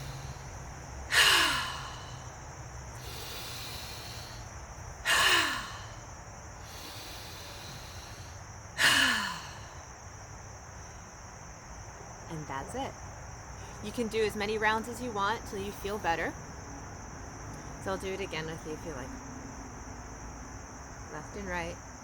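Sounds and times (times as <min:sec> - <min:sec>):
woman breathing with sighing exhales: 0:00.0 - 0:10.1.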